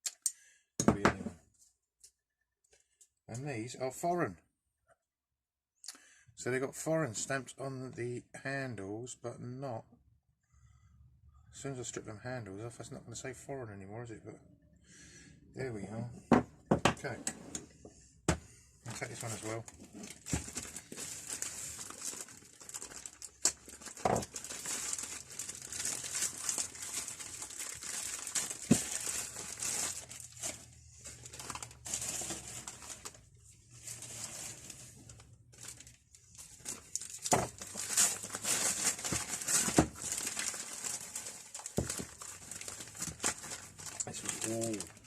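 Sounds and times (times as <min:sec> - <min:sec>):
packaging crinkling and tearing: 0:18.9 - 0:45.0.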